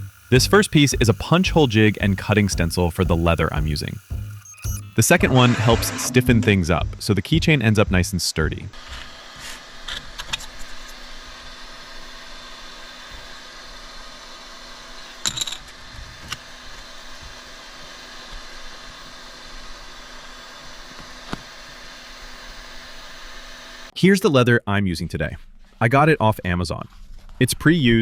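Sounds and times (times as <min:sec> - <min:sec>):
faint steady tones: 0:00.0 - 0:08.8.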